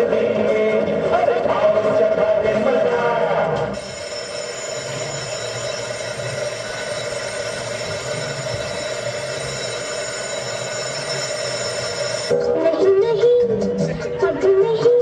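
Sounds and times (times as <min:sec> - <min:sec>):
electric bell ringing: 0:03.8 - 0:12.4.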